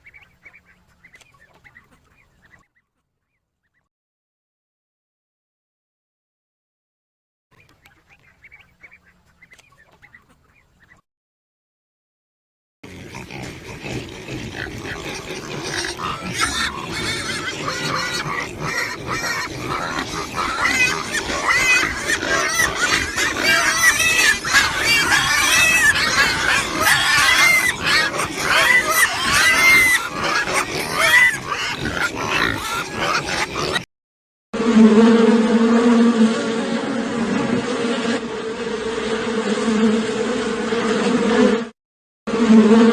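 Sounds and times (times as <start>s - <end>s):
farm animals calling: 0.0s - 3.9s, 7.6s - 11.0s, 12.9s - 33.9s.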